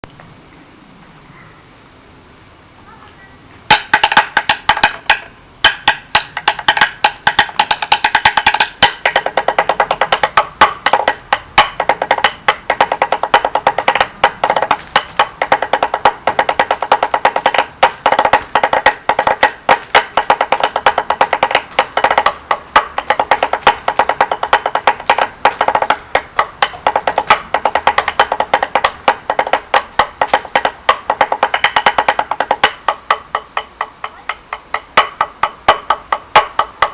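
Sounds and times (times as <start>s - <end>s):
wood blocks drummed rhythmically: 3.7s - 36.9s.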